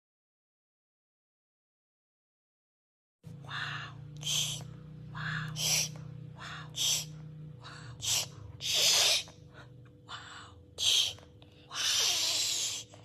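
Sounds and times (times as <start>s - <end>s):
child breathing noisily: 3.5s - 13.0s.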